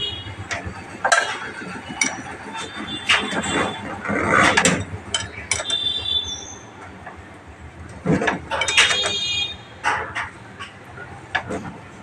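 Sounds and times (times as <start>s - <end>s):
spanner clinking on metal nuts: 4.5s - 5.8s, 8.2s - 10.8s.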